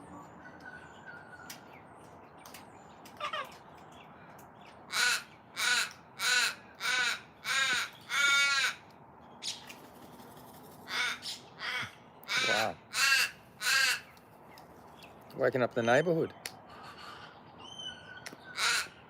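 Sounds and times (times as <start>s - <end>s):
raven cawing: 4.2s - 9.0s, 10.9s - 14.2s, 16.7s - 17.5s, 18.2s - 19.0s.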